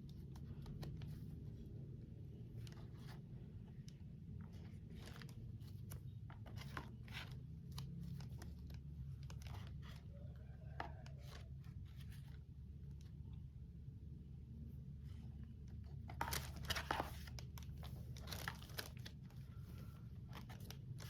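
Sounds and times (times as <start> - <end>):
packaging crinkling and tearing: 16.1 - 19.5.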